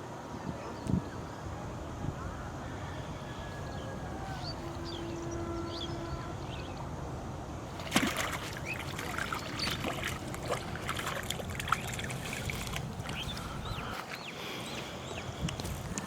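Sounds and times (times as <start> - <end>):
water splashing: 7.7 - 14.2
bird chirps: 13.1 - 15.3.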